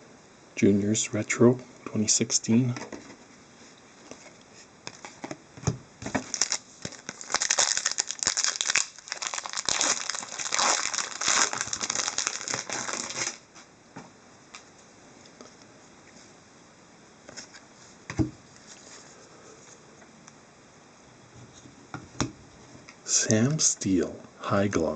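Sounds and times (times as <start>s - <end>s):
card pack wrapper crinkling: 6.1s - 13.4s.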